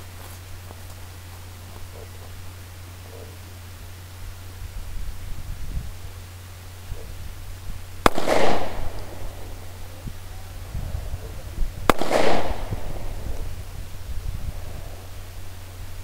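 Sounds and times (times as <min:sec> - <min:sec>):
pistol shots with echo: 0:08.0 - 0:09.7, 0:11.9 - 0:13.2.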